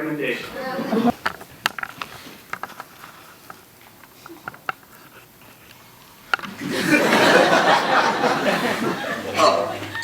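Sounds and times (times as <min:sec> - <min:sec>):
audience noise: 0:06.4 - 0:10.0.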